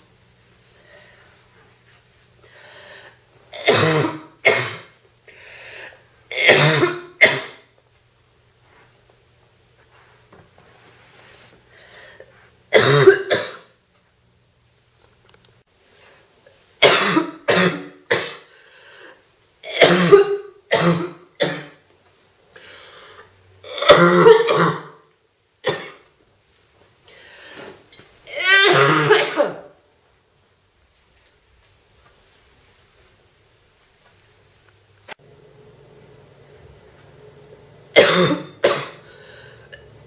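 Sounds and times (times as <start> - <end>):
woman coughing: 3.6 - 5.0, 6.3 - 7.7, 12.7 - 13.7, 16.8 - 18.5, 19.7 - 21.8, 23.7 - 25.0, 25.6 - 26.1, 28.3 - 29.8, 38.0 - 39.1
faint breaths: 27.0 - 27.8, 39.0 - 39.9.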